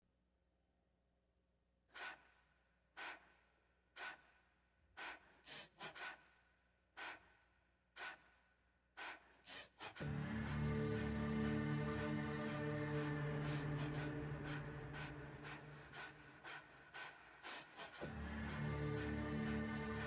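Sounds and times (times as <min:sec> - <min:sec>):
person gasping: 0:02.0 - 0:06.4, 0:09.0 - 0:20.0
music with sustained tones: 0:10.0 - 0:17.1, 0:17.8 - 0:20.0.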